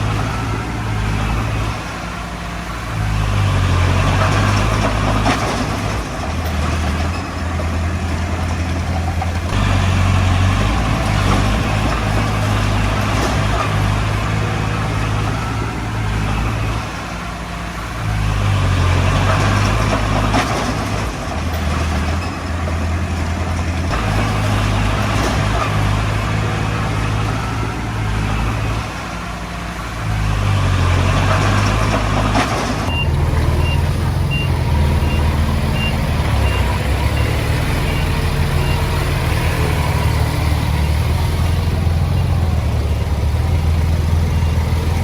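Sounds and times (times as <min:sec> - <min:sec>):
bulldozer diesel engine under load: 0:00.0 - 0:45.0
machine clatter: 0:19.0 - 0:25.9, 0:31.0 - 0:35.3.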